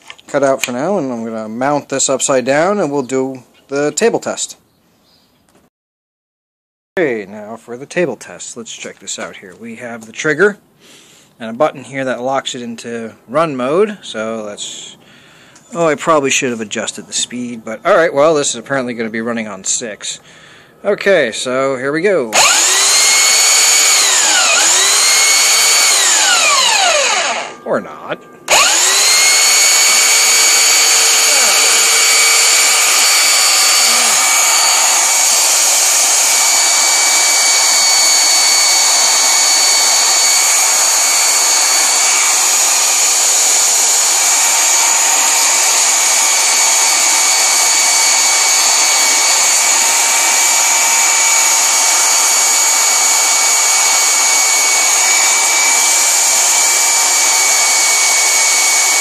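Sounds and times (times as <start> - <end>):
belt sander whine: 22.3 - 59.0.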